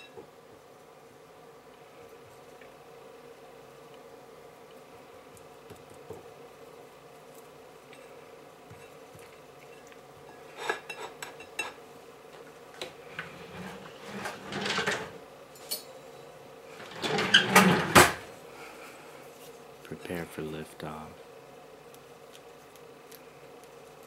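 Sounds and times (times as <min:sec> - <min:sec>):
cutlery clinking on dishes: 0:10.5 - 0:11.8
cutlery scraping and clattering: 0:10.5 - 0:11.8.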